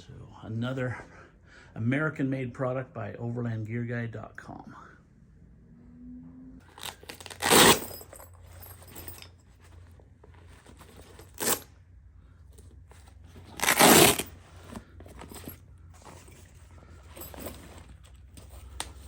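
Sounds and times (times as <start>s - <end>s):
fabric ripping: 6.8s - 8.0s, 13.5s - 14.3s.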